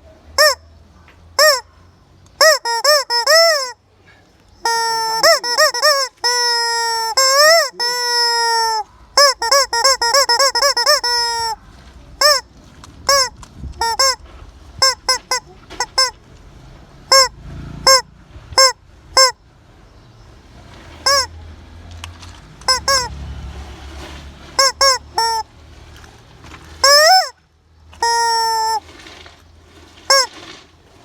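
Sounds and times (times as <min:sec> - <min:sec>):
rubber chicken toy squawking: 0:00.4 - 0:00.7, 0:01.4 - 0:01.7, 0:02.4 - 0:03.8, 0:04.6 - 0:11.6, 0:12.2 - 0:14.2, 0:14.8 - 0:16.2, 0:17.1 - 0:19.4, 0:21.0 - 0:21.3, 0:22.6 - 0:23.2, 0:24.6 - 0:25.5, 0:26.8 - 0:27.4, 0:28.0 - 0:28.9, 0:30.1 - 0:30.4.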